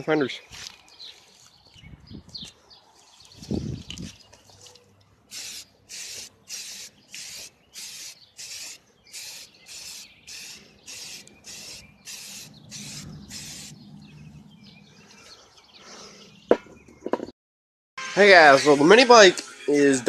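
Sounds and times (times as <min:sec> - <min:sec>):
spray paint can hissing: 0:05.3 - 0:13.8.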